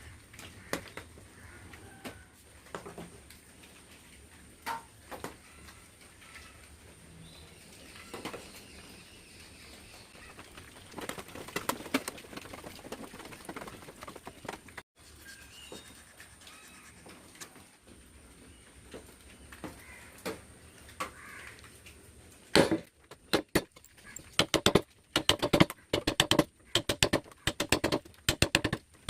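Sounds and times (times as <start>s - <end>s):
quick run of knocks: 10.1s - 14.8s
chisel tapping and scraping wood: 24.4s - 28.8s.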